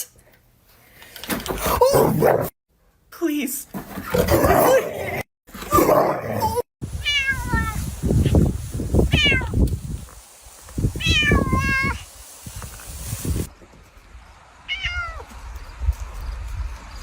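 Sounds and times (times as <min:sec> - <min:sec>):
cat meowing: 0:07.0 - 0:07.8, 0:09.1 - 0:09.6, 0:11.0 - 0:12.0, 0:14.7 - 0:15.3.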